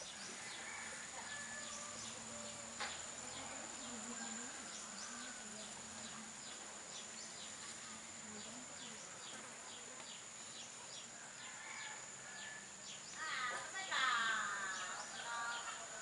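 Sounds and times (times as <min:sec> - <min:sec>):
insect high whine: 0:00.0 - 0:09.2
insect chirps: 0:00.0 - 0:16.0.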